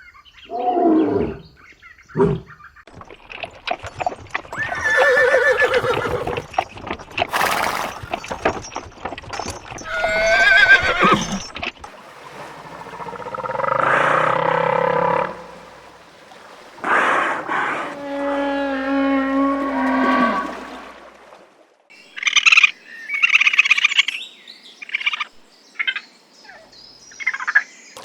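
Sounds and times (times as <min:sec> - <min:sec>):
farm animal calling: 0:09.8 - 0:11.8
farm animal long call: 0:12.4 - 0:15.9, 0:16.8 - 0:20.8.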